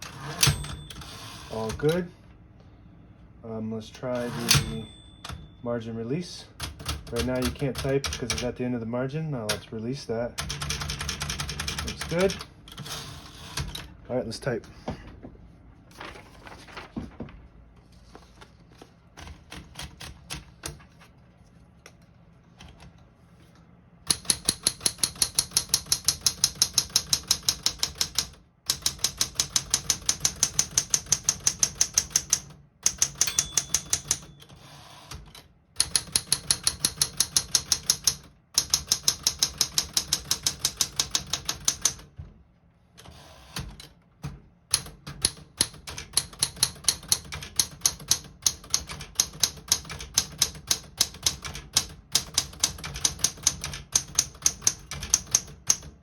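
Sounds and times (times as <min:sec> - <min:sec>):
manual typewriter typing: 0:00.0 - 0:02.1, 0:04.0 - 0:05.5, 0:06.6 - 0:08.6, 0:10.4 - 0:13.9, 0:19.2 - 0:20.8, 0:24.1 - 0:42.1, 0:43.0 - 0:56.0.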